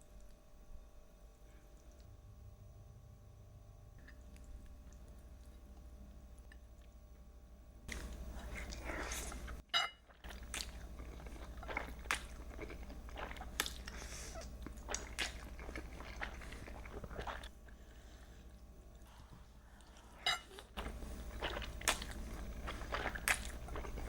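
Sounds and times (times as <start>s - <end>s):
person chewing and biting food: 7.9s - 17.8s, 19.8s - 24.0s.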